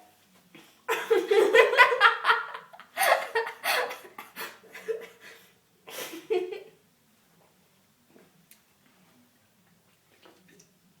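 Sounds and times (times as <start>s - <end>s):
girls giggling: 0.9s - 5.3s.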